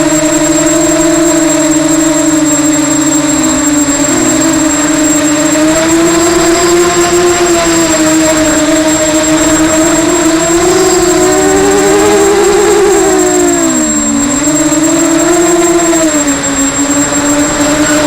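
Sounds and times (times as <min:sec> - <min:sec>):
drone propellers buzzing: 0:00.0 - 0:18.0
thin high whine: 0:00.0 - 0:18.0.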